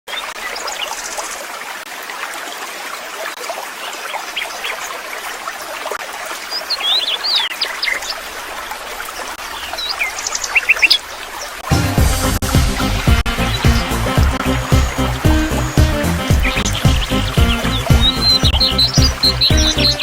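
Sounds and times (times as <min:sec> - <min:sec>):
water trickling: 0:00.1 - 0:20.0
birds chirping: 0:09.1 - 0:20.0.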